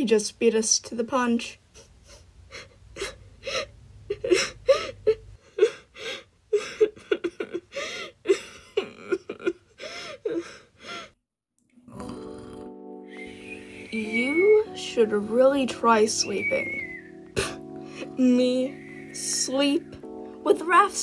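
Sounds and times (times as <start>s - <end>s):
person sobbing: 1.8s - 11.2s, 17.3s - 18.3s.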